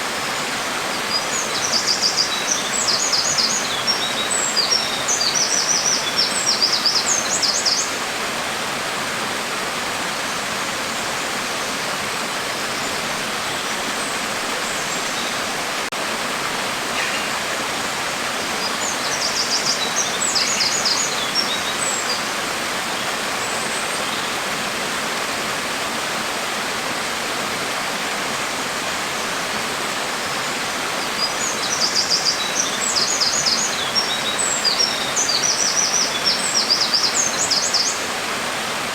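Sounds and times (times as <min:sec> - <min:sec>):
bird chirping: 0:18.6 - 0:22.2.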